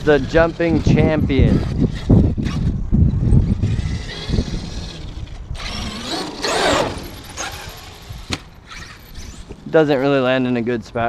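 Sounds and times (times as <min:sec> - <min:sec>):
rc truck motor whine: 0:00.0 - 0:10.3
rc truck hitting the ground: 0:03.8 - 0:09.6.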